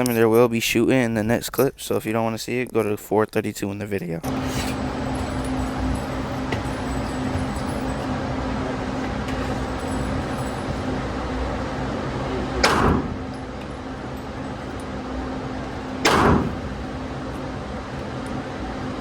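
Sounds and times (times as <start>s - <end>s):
low hum: 4.2s - 19.0s
gunshot with echo: 12.6s - 13.3s, 16.0s - 16.8s.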